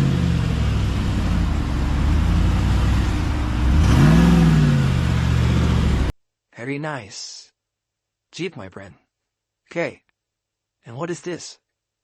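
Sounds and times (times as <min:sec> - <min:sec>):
car engine revving: 0:00.0 - 0:06.1.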